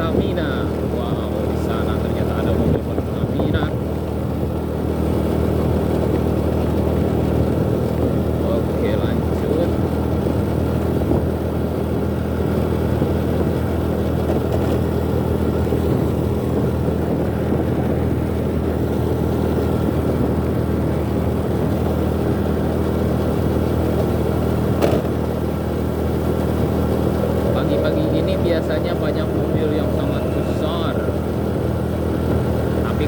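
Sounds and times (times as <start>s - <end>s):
motorcycle engine running: 0.0s - 33.0s
road noise: 0.0s - 33.0s
short knock: 24.8s - 25.2s.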